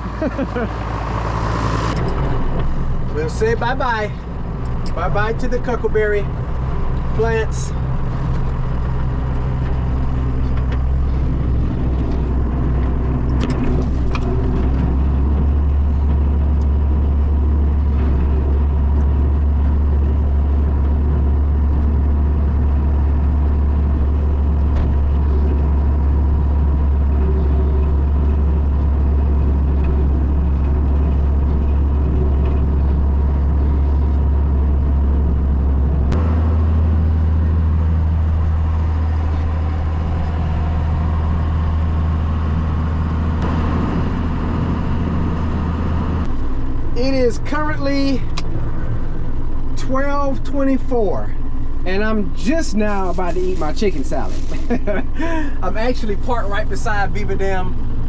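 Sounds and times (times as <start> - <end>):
tractor engine droning: 0.0 - 58.0
rotary cutter mulching: 51.8 - 56.6.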